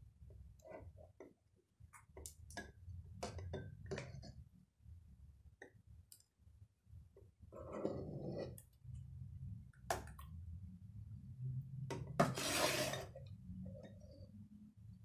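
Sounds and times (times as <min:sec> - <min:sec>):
spoon scraping saucepan: 0:12.2 - 0:13.2.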